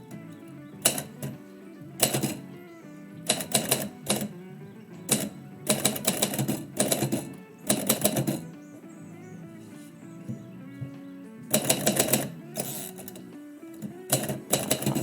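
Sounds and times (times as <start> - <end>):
background music: 0.0 - 15.0
typewriter keys clacking: 0.8 - 1.4, 2.0 - 2.4, 3.3 - 4.3, 5.1 - 8.4, 11.5 - 13.2, 13.8 - 15.0.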